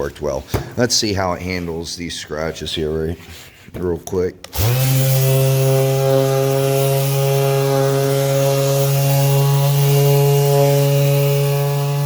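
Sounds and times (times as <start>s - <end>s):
sander motor hum: 4.5s - 12.0s
abrasive sanding hiss: 4.8s - 12.0s.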